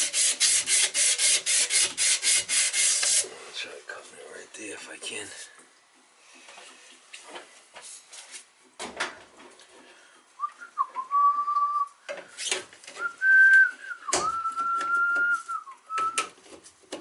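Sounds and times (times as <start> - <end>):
person whistling: 10.4 - 12.0, 13.0 - 16.3.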